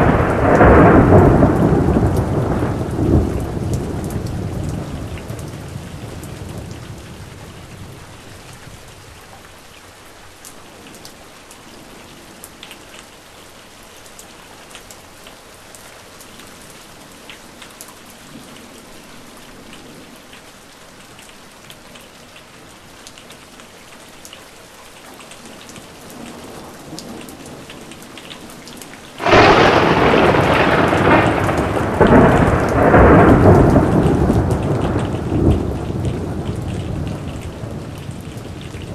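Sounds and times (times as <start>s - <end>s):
loud thunderclap: 0.0s - 7.4s, 29.2s - 38.9s
thunder rumbling: 0.0s - 9.0s, 29.2s - 38.9s
steady rain: 0.0s - 38.9s.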